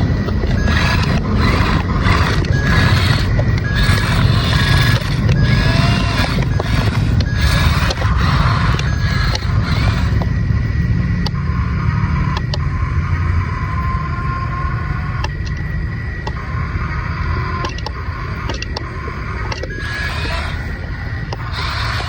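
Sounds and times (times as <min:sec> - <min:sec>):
low rumble: 0:00.0 - 0:22.0
small electric motors whining: 0:00.0 - 0:22.0
clicks: 0:00.2 - 0:10.4, 0:12.3 - 0:12.7, 0:15.2 - 0:16.5, 0:17.6 - 0:22.0.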